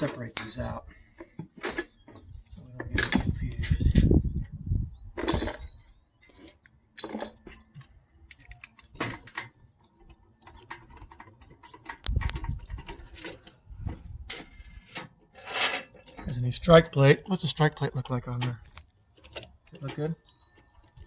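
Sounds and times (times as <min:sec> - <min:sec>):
small metal parts clinking: 0:05.2 - 0:21.0.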